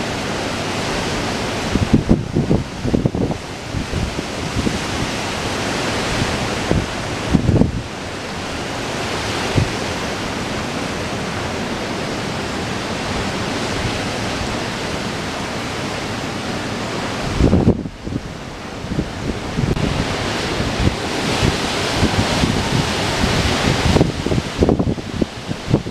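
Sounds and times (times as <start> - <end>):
strong wind blowing: 0.0 - 25.9
wind buffeting microphone: 0.0 - 25.9.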